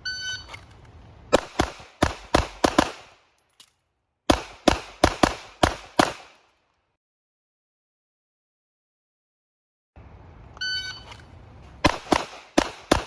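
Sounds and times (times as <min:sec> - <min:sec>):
pistol shots: 0:01.3 - 0:03.2, 0:04.3 - 0:06.5, 0:11.8 - 0:13.0.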